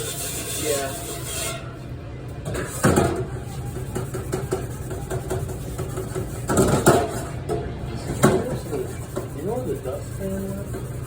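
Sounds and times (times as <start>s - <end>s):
low machine hum: 0.0s - 11.0s
dishes and utensils clattering: 2.4s - 9.3s.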